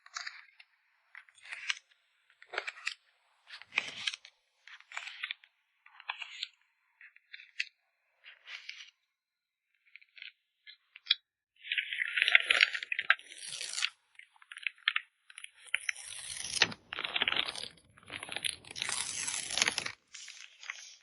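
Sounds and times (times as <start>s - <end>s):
packing materials crinkling: 15.8s - 20.9s.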